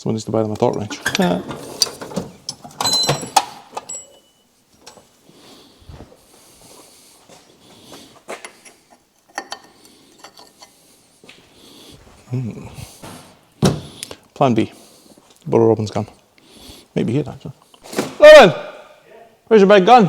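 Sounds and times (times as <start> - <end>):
metal hand tools clinking: 0.6 - 5.0.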